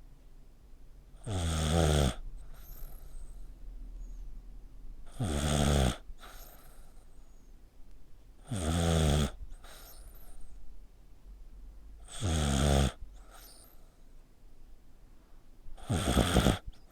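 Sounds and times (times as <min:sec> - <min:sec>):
pet snoring: 0:01.2 - 0:03.5, 0:05.1 - 0:07.0, 0:08.4 - 0:10.5, 0:12.0 - 0:13.9, 0:15.8 - 0:16.9
soft breathing: 0:02.3 - 0:04.4, 0:06.1 - 0:07.7, 0:09.5 - 0:10.8.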